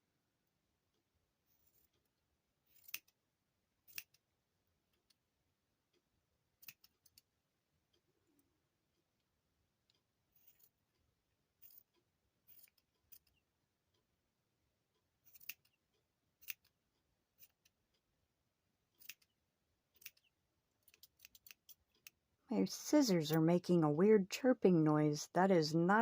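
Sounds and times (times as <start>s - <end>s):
scissors snipping yarn: 2.6s - 3.2s, 3.8s - 4.3s, 6.6s - 7.3s, 11.6s - 13.4s, 15.2s - 17.8s, 18.9s - 22.2s.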